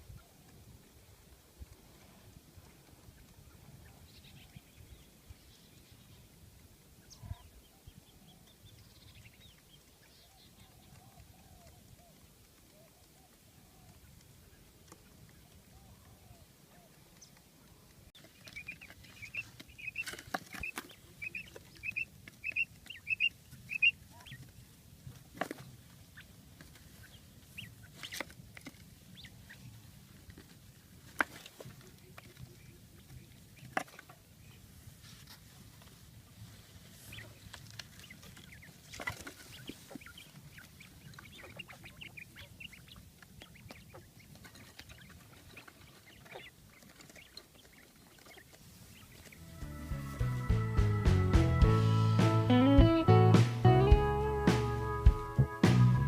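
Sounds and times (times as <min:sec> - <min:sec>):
bird calling high repeated notes: 0:49.3 - 0:56.0.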